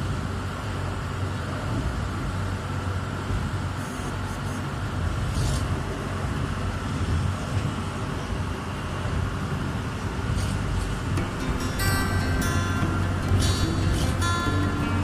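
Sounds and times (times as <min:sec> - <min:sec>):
ferry engine rumbling: 0:00.0 - 0:15.0.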